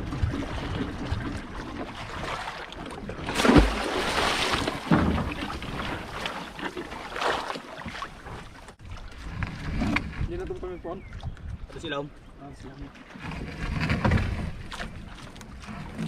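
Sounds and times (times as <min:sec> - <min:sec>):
wind on microphone: 0:00.0 - 0:02.4, 0:08.2 - 0:12.5
water sloshing around boat: 0:00.0 - 0:16.0.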